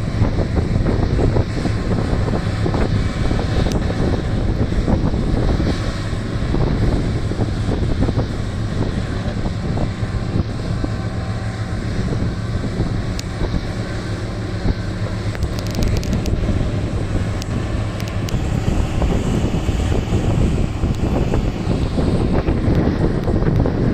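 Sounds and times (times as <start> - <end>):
large diesel engines humming: 0.0 - 23.9
wind buffeting microphone: 0.0 - 23.9
sharp clicks: 15.3 - 16.4, 17.3 - 18.4.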